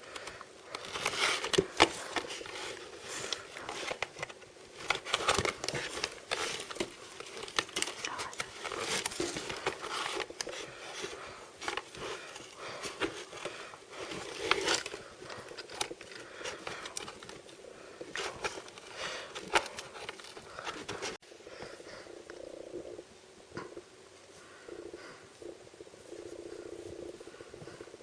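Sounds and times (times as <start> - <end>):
packaging clicks and taps: 0.0 - 21.2
plastic and foil crinkling: 0.0 - 21.2.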